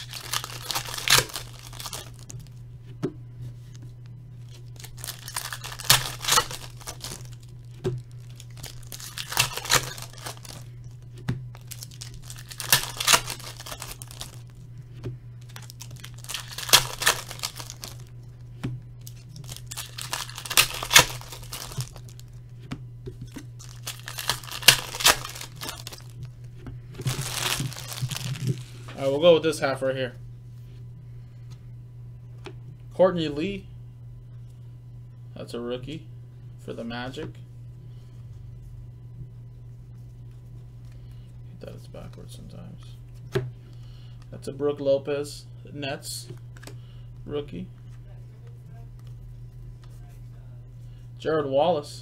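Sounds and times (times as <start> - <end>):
foil wrappers tearing and crinkling: 0.0 - 2.6, 4.4 - 14.6, 15.4 - 18.1, 19.0 - 22.4, 23.2 - 26.3, 27.0 - 29.0
steady low hum: 0.0 - 52.0.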